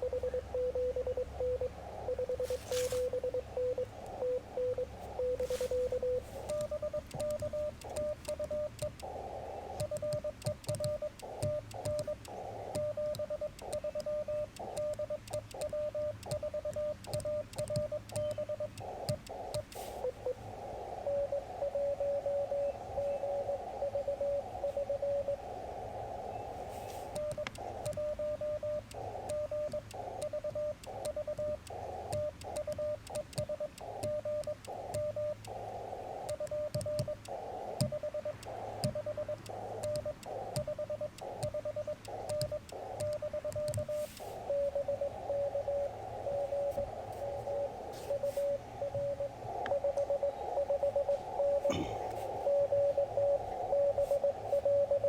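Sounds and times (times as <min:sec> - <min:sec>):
morse code tone: 0:00.0 - 0:25.6, 0:26.4 - 0:55.0
receiver hiss: 0:00.0 - 0:55.0.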